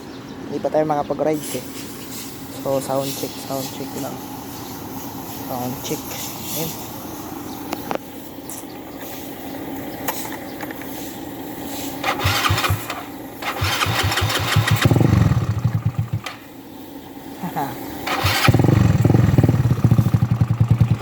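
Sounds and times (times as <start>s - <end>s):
motorcycle engine firing loudly: 12.0s - 16.5s, 18.1s - 21.0s
motorcycle starter cranking: 12.0s - 16.5s, 18.0s - 21.0s.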